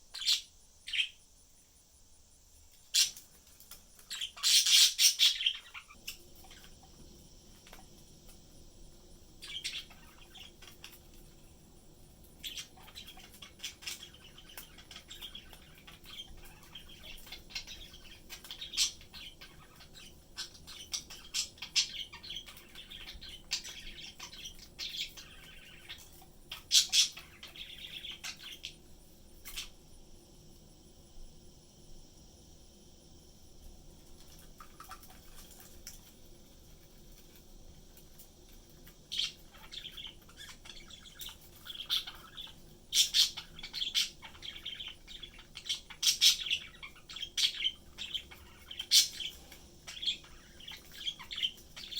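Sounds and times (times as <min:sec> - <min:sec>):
budgerigars chirping: 0:00.1 - 0:01.2, 0:04.1 - 0:06.8, 0:09.4 - 0:11.0, 0:12.4 - 0:28.8, 0:39.0 - 0:51.9.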